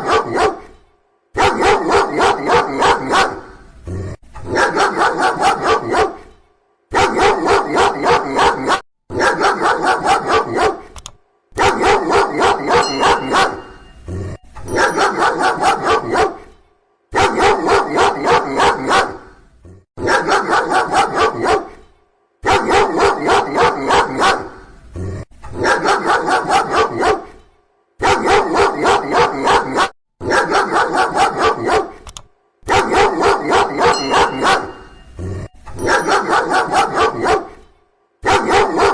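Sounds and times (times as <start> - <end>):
dog barking: 0.0 - 0.8, 1.4 - 3.6, 4.4 - 11.0, 11.6 - 14.0, 14.7 - 19.4, 20.0 - 24.7, 25.5 - 27.4, 28.0 - 32.0, 32.6 - 35.0, 35.8 - 38.9.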